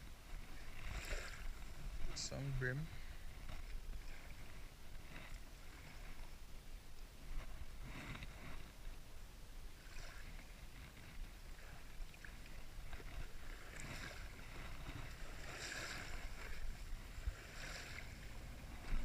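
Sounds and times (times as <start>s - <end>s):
wind buffeting microphone: 12.8s - 19.0s.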